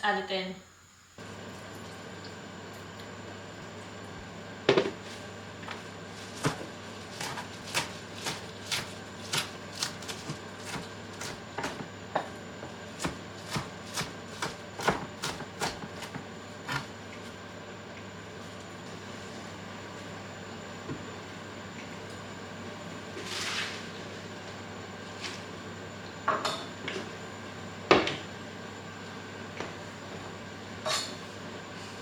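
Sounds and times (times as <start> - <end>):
knife chopping on a cutting board: 6.4 - 12.3, 13.0 - 16.9.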